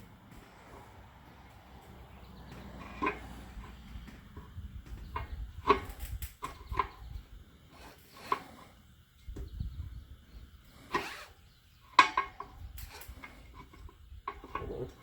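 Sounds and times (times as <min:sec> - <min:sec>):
tire irons knocking on wheel rim: 0:01.3 - 0:07.2.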